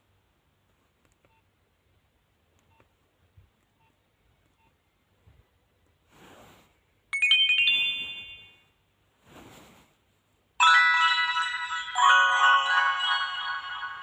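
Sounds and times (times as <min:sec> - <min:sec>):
phone chiming alert tone: 0:07.2 - 0:08.6, 0:10.6 - 0:14.0
phone ringtone: 0:07.2 - 0:08.7, 0:10.6 - 0:14.0.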